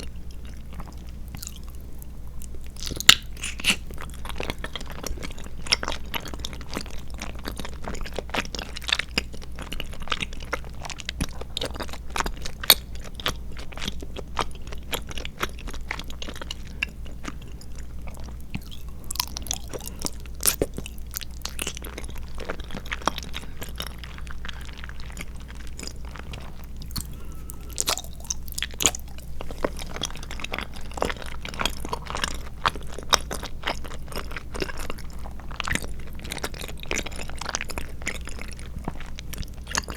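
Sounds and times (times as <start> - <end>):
wet chewing clicks and smacks: 0.0 - 39.9
steady low hum: 13.4 - 39.9.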